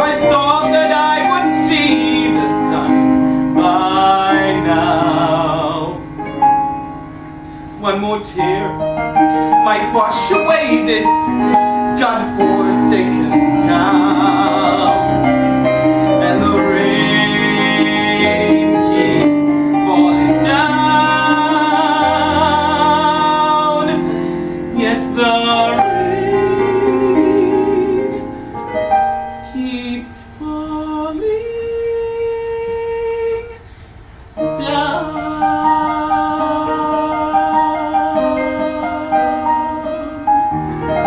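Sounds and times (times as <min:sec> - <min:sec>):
person singing with vibrato: 0:00.0 - 0:41.0
piano accompaniment: 0:00.0 - 0:41.0.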